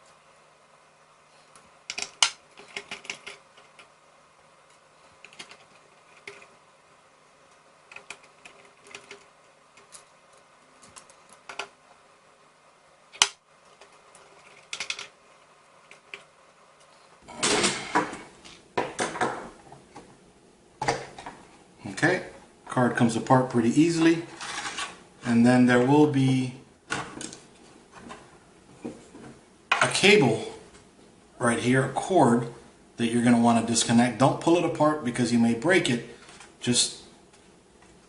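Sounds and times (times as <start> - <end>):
parts clattering: 13.2 - 20.1, 24.0 - 25.0.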